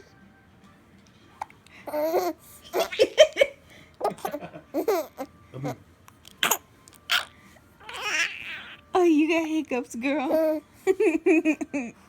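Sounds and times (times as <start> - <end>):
baby laughing: 1.9 - 5.8, 6.4 - 8.8
baby hiccuping: 6.4 - 8.8.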